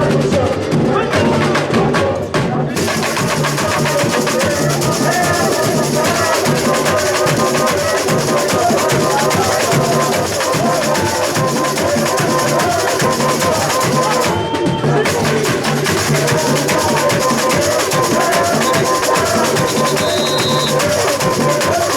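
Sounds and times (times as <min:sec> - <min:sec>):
samba drums playing: 0:00.0 - 0:21.9.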